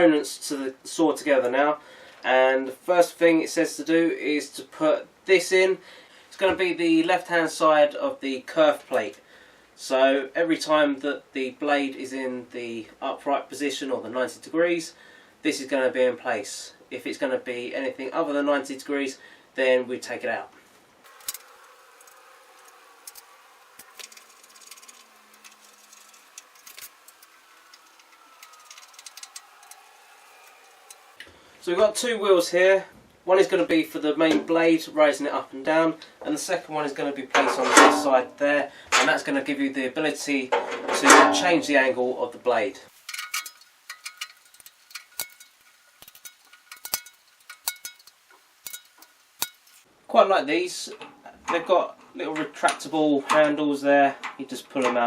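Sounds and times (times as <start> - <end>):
small metallic rattles: 21.1 - 31.2, 43.0 - 49.9
sharp metallic clinks and taps: 43.1 - 49.8.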